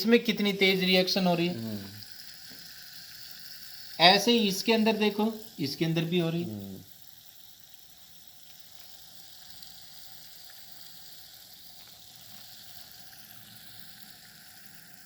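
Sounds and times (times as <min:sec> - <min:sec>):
faint fizzing of bubbles: 0:07.5 - 0:15.0.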